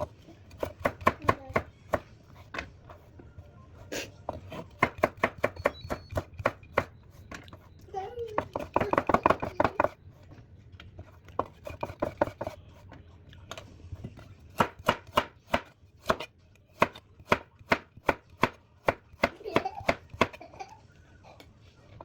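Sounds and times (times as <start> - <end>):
knife chopping on cutting board: 0.5 - 3.0, 4.3 - 7.7, 11.0 - 12.6, 13.5 - 20.4.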